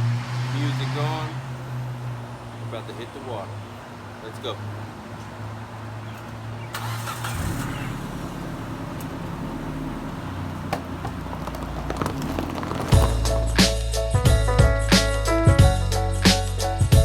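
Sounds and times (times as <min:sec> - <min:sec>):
car engine pulling away: 0:00.0 - 0:04.2, 0:04.9 - 0:14.0
loud music with a beat: 0:13.0 - 0:17.0.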